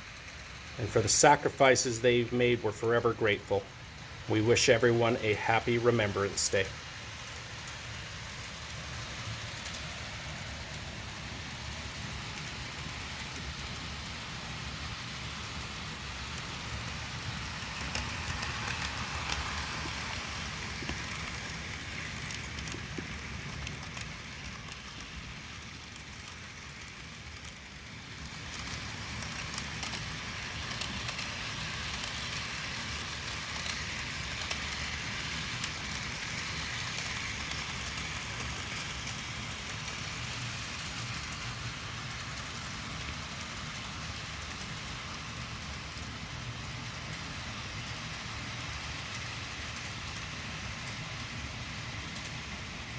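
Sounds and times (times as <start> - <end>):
model train motors whirring: 0.0 - 52.9
wheels rattling on rails: 0.0 - 52.9.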